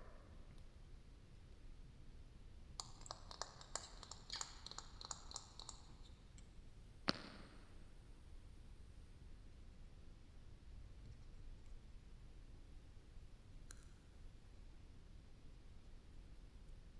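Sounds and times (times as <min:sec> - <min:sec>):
light clicks and taps: 0:02.8 - 0:06.5.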